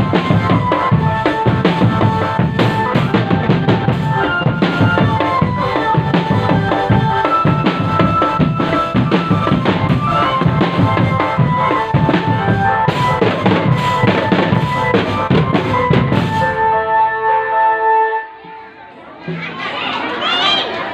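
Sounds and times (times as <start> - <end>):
snare and bass drum beats: 0.0 - 16.6
marching drum band playing: 0.0 - 16.7.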